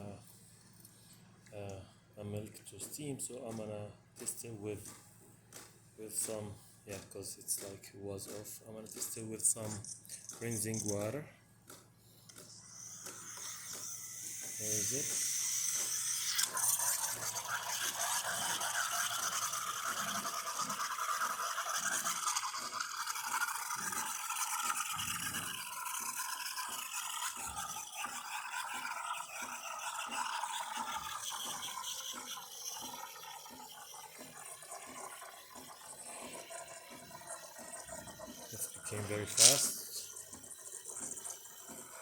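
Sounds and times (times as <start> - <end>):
steam wand hissing and gurgling: 12.5 - 42.0.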